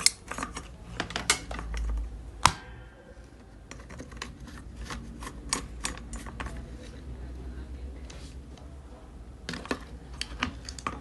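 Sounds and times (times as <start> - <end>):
tools clicking and tapping: 0.0 - 2.6, 3.3 - 6.6, 9.5 - 11.0.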